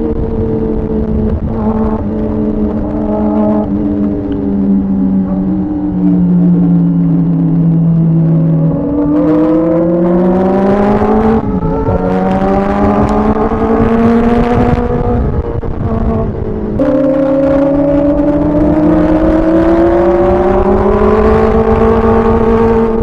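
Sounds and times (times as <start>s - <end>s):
motorcycle engine revving: 0.0s - 23.0s.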